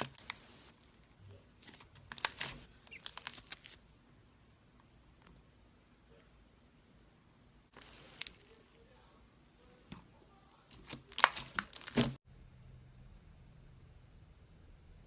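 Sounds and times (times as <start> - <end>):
slime being squeezed: 1.6 - 3.8, 10.8 - 12.2.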